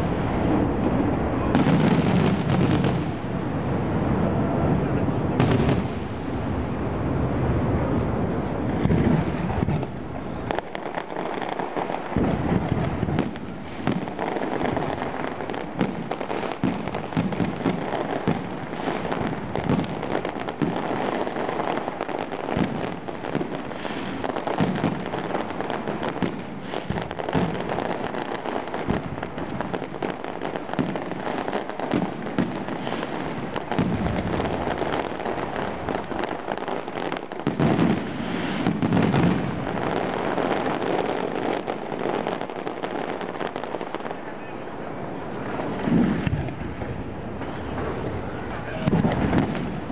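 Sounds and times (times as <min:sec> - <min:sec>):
heavy firework booms: 0:00.0 - 0:44.4, 0:45.0 - 0:49.9
fireworks crackling bangs: 0:00.0 - 0:49.9.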